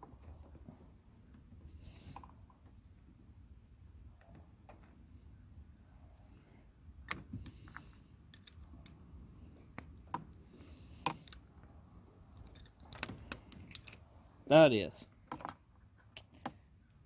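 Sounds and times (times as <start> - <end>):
faint metallic clicks and clinks: 6.4 - 9.0, 12.3 - 14.0.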